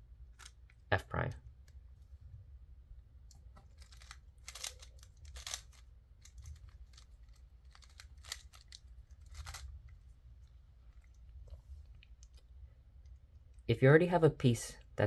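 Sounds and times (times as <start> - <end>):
puzzle cube clicking and scraping: 3.6 - 10.0.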